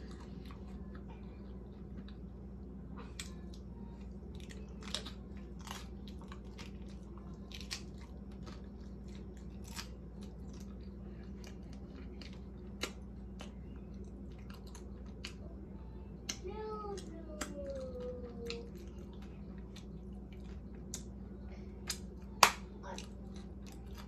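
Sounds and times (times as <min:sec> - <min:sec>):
low hum: 0:00.0 - 0:24.0
person chewing: 0:03.0 - 0:15.6, 0:21.8 - 0:24.0.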